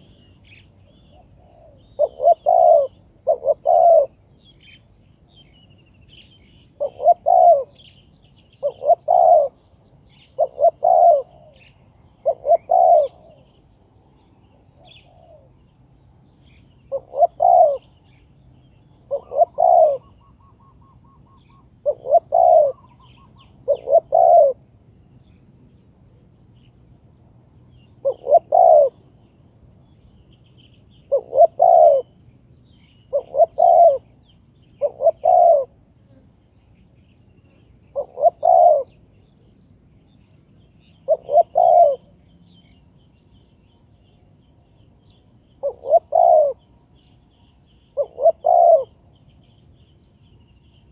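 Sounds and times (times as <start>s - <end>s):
dove cooing: 0.0s - 4.8s, 6.8s - 7.9s, 8.6s - 13.6s, 14.7s - 15.7s, 16.9s - 18.2s, 19.0s - 24.7s, 27.9s - 29.1s, 31.1s - 32.2s, 33.1s - 36.2s, 37.5s - 39.2s, 41.0s - 42.2s, 45.5s - 46.7s, 47.9s - 49.0s.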